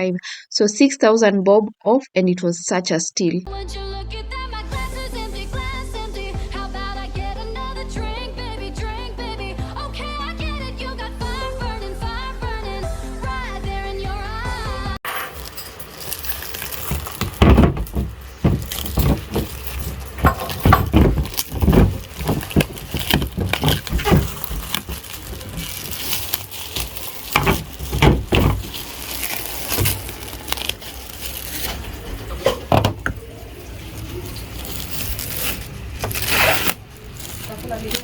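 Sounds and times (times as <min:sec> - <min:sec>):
knocks and clatters: 0:15.0 - 0:33.3.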